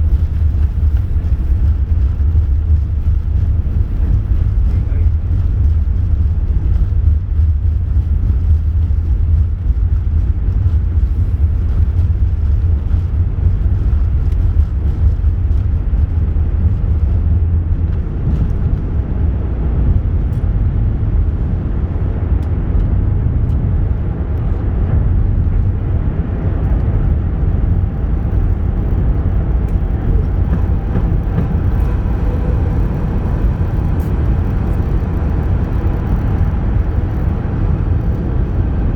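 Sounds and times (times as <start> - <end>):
jet engines rumbling in cabin: 0.0 - 38.9
rushing air: 29.3 - 38.9.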